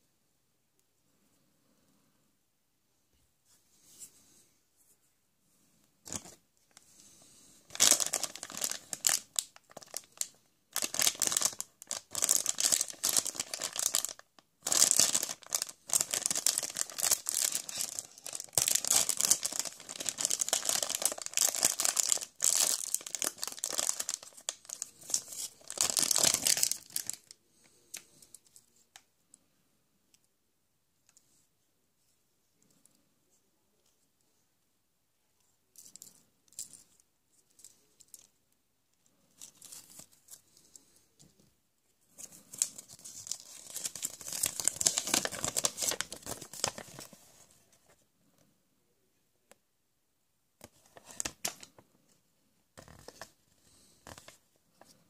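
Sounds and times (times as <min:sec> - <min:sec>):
wrapping tearing and crinkling: 0:07.7 - 0:27.4, 0:42.2 - 0:47.4.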